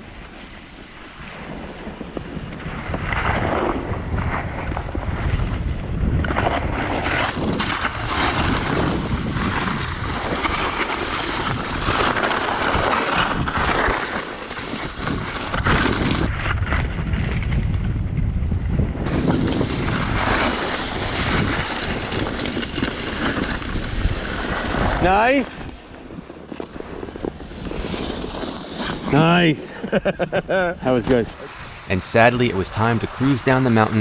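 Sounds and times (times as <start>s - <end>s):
wind rushing over microphone: 1.4s - 10.7s, 14.7s - 20.3s.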